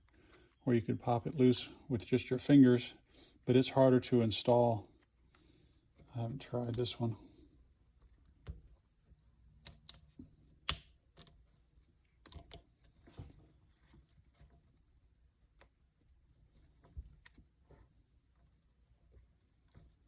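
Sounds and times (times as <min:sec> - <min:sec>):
small plastic clicks and taps: 0:12.2 - 0:12.7.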